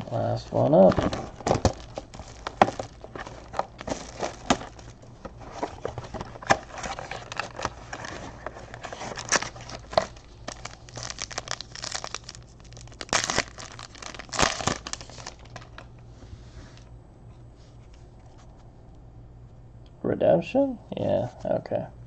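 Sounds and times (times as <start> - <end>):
foil wrappers crinkling: 0.3 - 15.9
card packs being torn open: 0.6 - 15.9.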